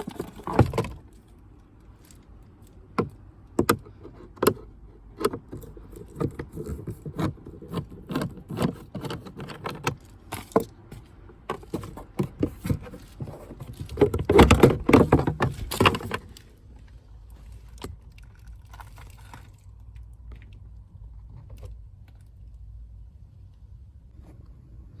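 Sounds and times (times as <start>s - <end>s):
parts and tools clattering: 0.0s - 1.2s, 5.3s - 16.5s.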